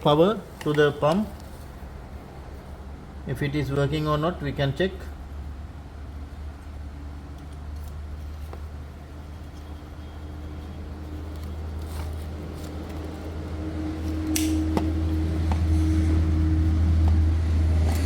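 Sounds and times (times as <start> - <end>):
sharp clicks: 14.3 - 14.6.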